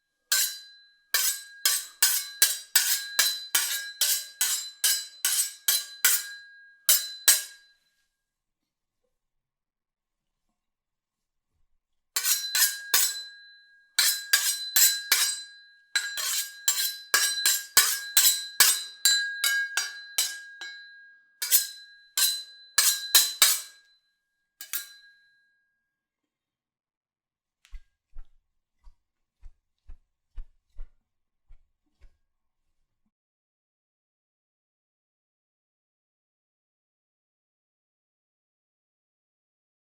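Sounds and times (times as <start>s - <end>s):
steel blades clashing: 0.3s - 7.6s, 12.2s - 13.3s, 14.0s - 20.8s, 21.4s - 23.8s, 24.6s - 25.1s.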